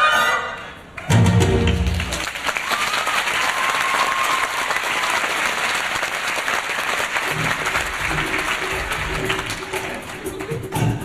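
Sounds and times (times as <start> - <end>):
audience clapping: 1.0 - 11.0.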